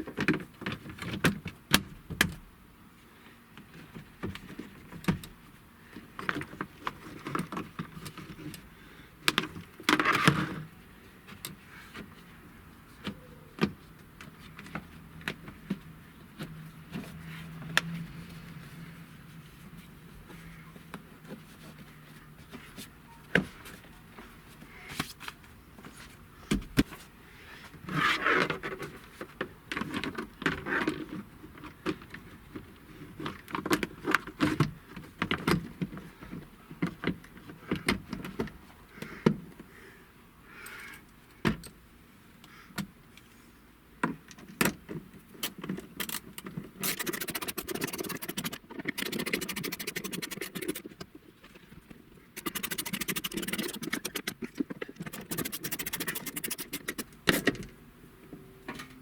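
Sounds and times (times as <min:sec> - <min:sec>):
rapid even clicking: 0:46.0 - 0:51.2, 0:52.4 - 0:57.2.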